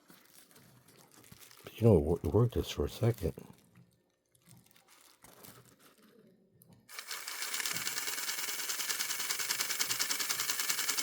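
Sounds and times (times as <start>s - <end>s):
model train motor clicking buzz: 6.9s - 11.0s.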